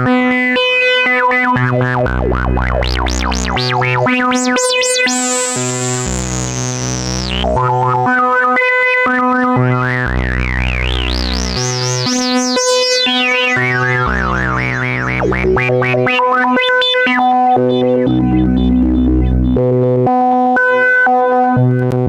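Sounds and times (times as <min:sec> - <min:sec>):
deep synth bass note: 0:01.8 - 0:08.1, 0:09.6 - 0:20.0
synthesizer note pattern: 0:01.9 - 0:08.2, 0:09.5 - 0:19.9
high warbling whistling tone: 0:02.8 - 0:07.5, 0:10.7 - 0:19.4.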